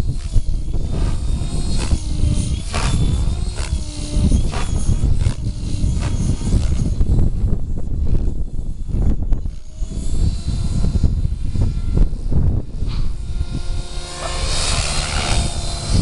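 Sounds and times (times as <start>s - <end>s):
electric motor and rotor tone: 0.0s - 16.0s
helicopter rotor blades swooshing: 0.0s - 16.0s
wind noise on microphone: 0.0s - 16.0s.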